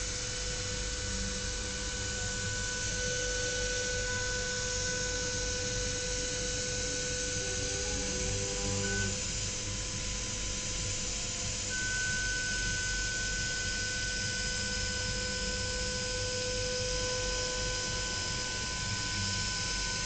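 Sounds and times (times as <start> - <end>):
spindle whine: 0.0 - 20.0.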